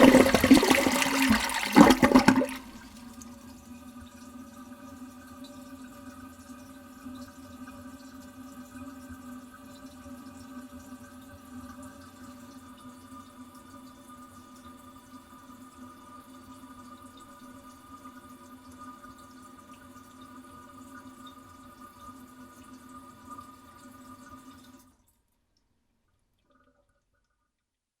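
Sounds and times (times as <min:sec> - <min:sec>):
fill valve whine: 0:00.0 - 0:03.2
toilet cistern refilling: 0:00.0 - 0:03.6.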